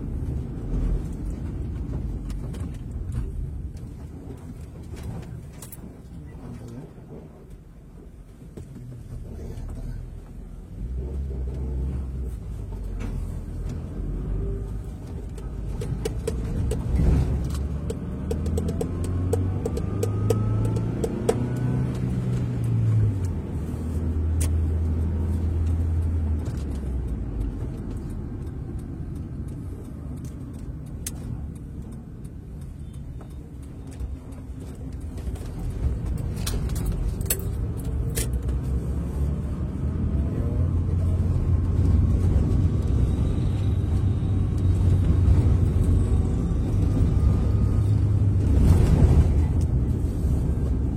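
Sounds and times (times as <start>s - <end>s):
road rumble: 0.0s - 50.9s
sharp clicks: 17.5s - 23.4s.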